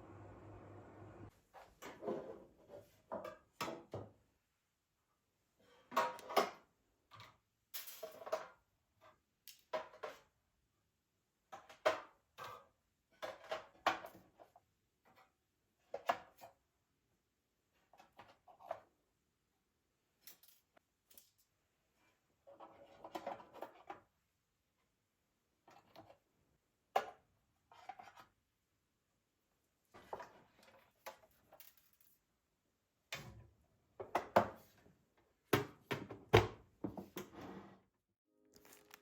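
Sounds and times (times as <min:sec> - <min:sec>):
low steady hum: 0:00.0 - 0:01.3.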